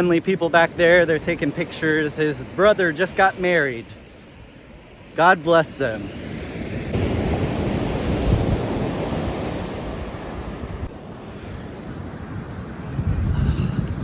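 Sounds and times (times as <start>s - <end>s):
ocean surf washing up a beach: 0.0s - 14.0s
wind rumbling on microphone: 6.6s - 14.0s.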